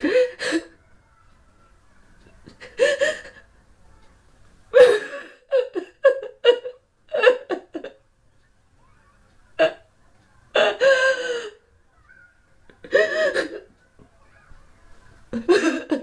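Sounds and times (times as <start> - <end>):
woman crying and sobbing: 0.0 - 0.8, 2.4 - 3.4, 4.7 - 8.0, 10.5 - 11.7, 12.7 - 13.7, 15.3 - 16.0.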